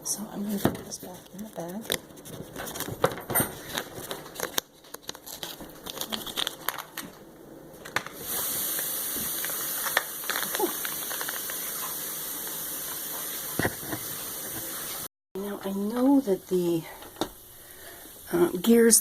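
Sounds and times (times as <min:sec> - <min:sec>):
bag crinkling: 0:01.3 - 0:07.2, 0:08.2 - 0:12.4
steady hiss: 0:08.2 - 0:15.1, 0:16.0 - 0:19.0.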